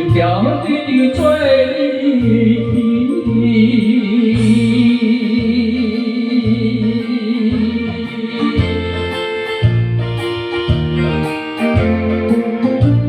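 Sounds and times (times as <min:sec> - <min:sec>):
man singing a long note: 0:00.0 - 0:09.4
karaoke backing track: 0:00.0 - 0:13.0.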